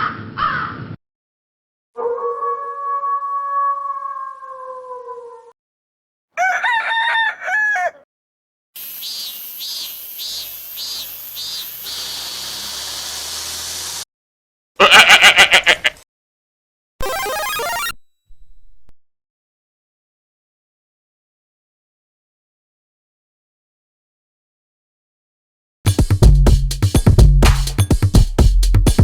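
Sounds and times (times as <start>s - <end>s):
rooster crowing: 2.0s - 5.5s, 6.4s - 8.1s.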